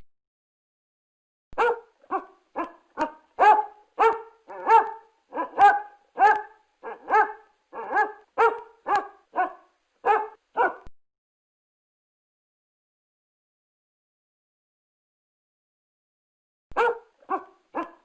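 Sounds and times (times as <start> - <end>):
dog barking: 1.6 - 10.9, 16.8 - 18.0.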